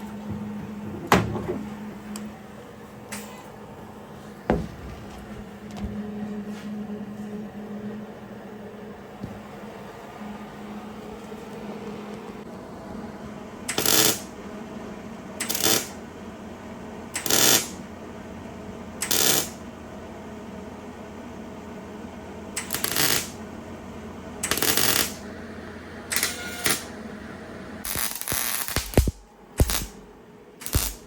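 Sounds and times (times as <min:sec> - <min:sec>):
welder crackling: 0:15.4 - 0:16.0, 0:22.6 - 0:23.4, 0:24.4 - 0:25.2, 0:27.8 - 0:30.0, 0:30.6 - 0:31.0.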